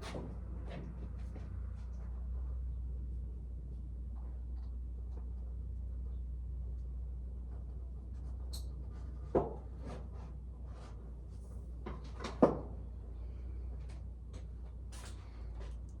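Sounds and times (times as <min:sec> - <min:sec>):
steady low hum: 0:12.7 - 0:16.0.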